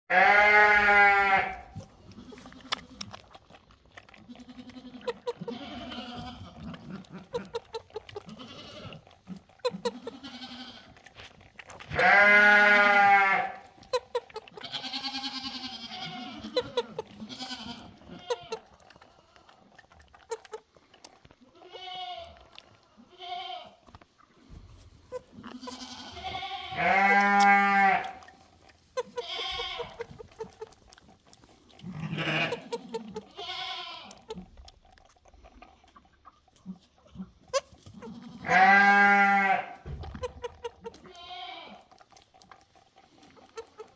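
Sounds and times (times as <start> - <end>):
goat kid bleating: 0.1 - 3.2, 4.2 - 11.1, 11.8 - 19.6, 21.4 - 23.9, 25.0 - 30.8, 31.8 - 34.5, 36.6 - 42.0.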